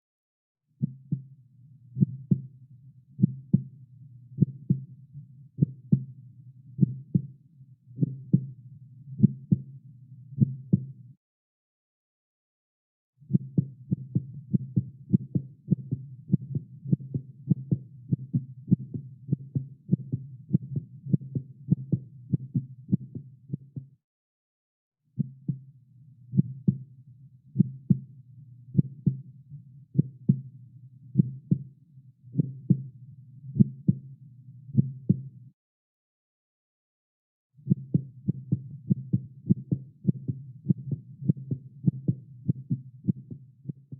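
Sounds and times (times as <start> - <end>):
heartbeat thumps: 13.3 - 23.8, 37.7 - 43.9.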